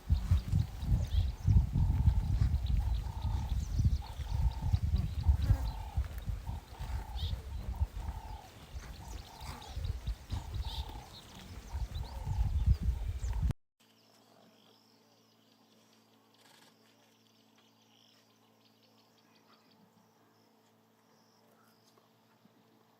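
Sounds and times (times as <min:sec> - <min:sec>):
animal calling: 0:00.0 - 0:13.4.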